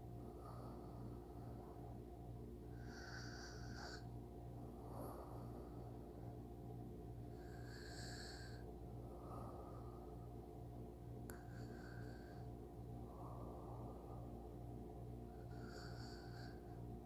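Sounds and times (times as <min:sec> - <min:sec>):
low hum: 0:00.0 - 0:17.0
person snoring softly: 0:02.7 - 0:06.4, 0:07.2 - 0:10.3, 0:11.3 - 0:14.5, 0:15.3 - 0:17.0.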